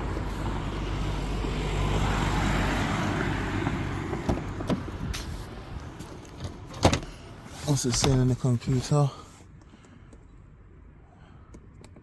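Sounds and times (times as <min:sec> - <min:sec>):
motor vehicle rushing: 0:00.0 - 0:06.0.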